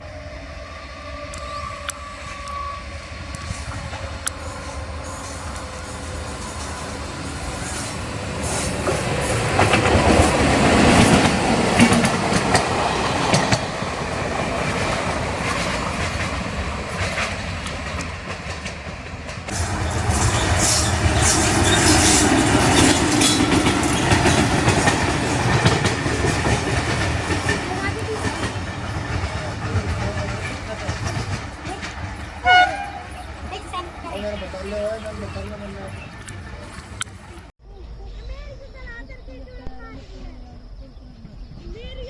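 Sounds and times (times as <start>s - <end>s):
train wheels clattering: 1.1s - 37.5s.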